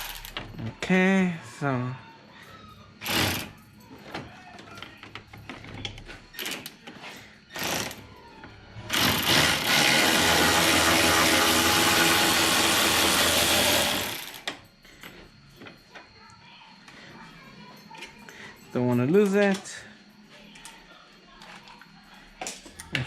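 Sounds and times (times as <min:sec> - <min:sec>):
power tool spinning: 0:08.9 - 0:14.5.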